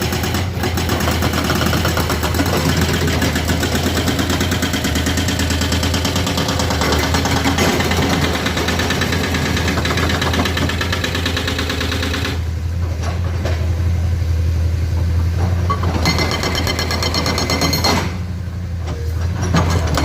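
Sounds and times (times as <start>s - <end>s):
loud rattling clatter: 0.0s - 12.4s
diesel engine running: 0.0s - 16.0s.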